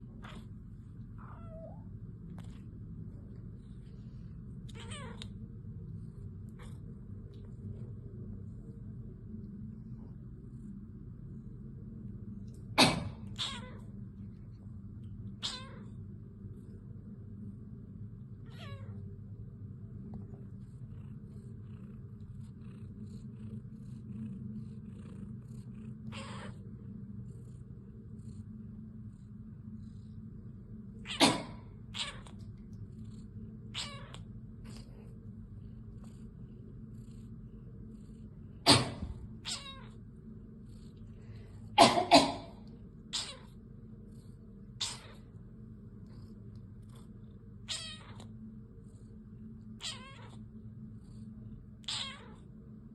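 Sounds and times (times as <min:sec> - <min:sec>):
cat purring: 0:00.0 - 0:12.8, 0:13.4 - 0:52.9
cat meowing: 0:01.2 - 0:01.8, 0:04.7 - 0:05.3, 0:13.3 - 0:13.8, 0:15.4 - 0:15.9, 0:18.4 - 0:19.0, 0:26.1 - 0:26.6, 0:31.1 - 0:32.4, 0:33.7 - 0:34.2, 0:39.4 - 0:40.0, 0:43.1 - 0:43.5, 0:44.8 - 0:45.2, 0:47.7 - 0:48.3, 0:49.8 - 0:50.4, 0:51.8 - 0:52.4
person fake coughing: 0:12.8 - 0:13.2, 0:31.2 - 0:31.6, 0:38.7 - 0:39.1, 0:41.8 - 0:42.6.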